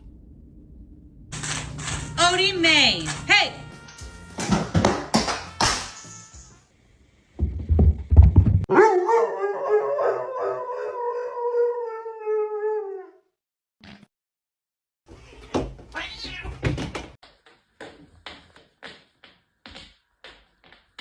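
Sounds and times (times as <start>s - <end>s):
knocks and scuffling: 7.4s - 8.7s.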